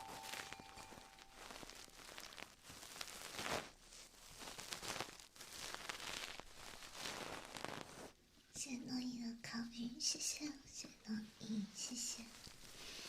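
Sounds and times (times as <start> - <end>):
breathing: 12.7 - 13.0.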